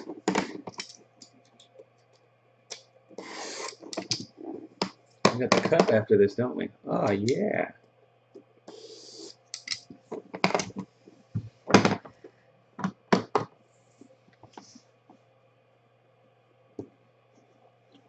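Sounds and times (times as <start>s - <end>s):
sharp clicks and knocks: 9.6s - 10.8s.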